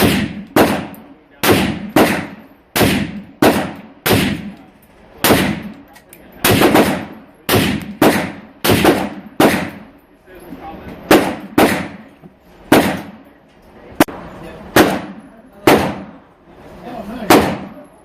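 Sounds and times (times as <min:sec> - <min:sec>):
rifle shots with echo: 0:00.0 - 0:04.6, 0:05.2 - 0:05.8, 0:06.4 - 0:10.0, 0:11.1 - 0:12.1, 0:12.7 - 0:13.3, 0:14.0 - 0:16.3, 0:17.3 - 0:17.8.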